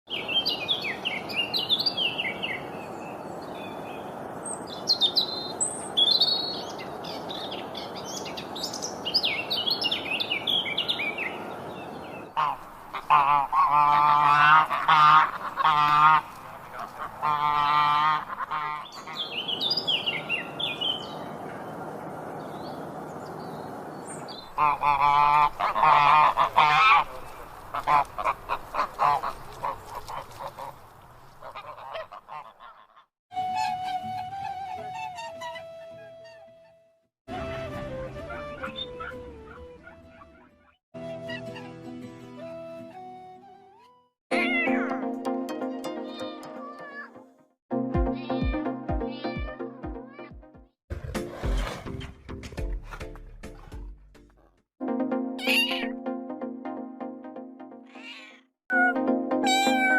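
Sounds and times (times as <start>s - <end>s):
birds chirping: 0.1s - 36.8s, 37.4s - 41.7s
loud repeated bird calls: 38.3s - 41.7s.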